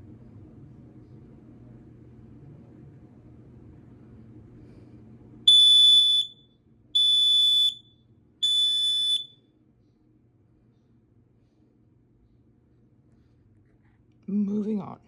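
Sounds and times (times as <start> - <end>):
smoke alarm beeps: 5.5 - 9.4.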